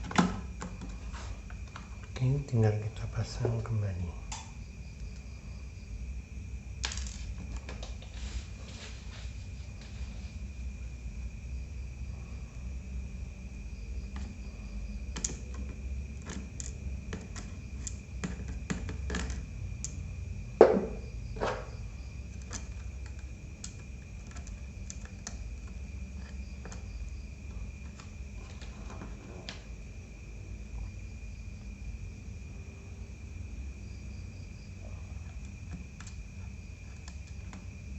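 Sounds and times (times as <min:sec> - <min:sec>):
crickets chirring: 0:00.0 - 0:37.9
small clicks and taps of handling: 0:15.1 - 0:20.0, 0:22.4 - 0:26.9
loud knock: 0:20.6 - 0:21.7.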